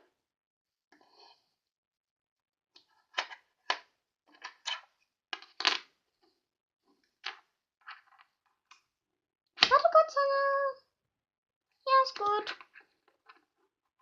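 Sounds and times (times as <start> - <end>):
toy pieces clicking and knocking: 2.8 - 6.0, 11.9 - 13.6.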